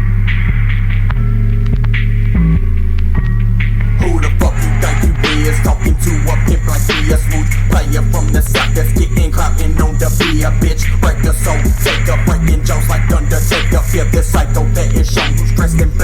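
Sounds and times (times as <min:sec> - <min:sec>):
hip hop music: 0:00.0 - 0:16.0.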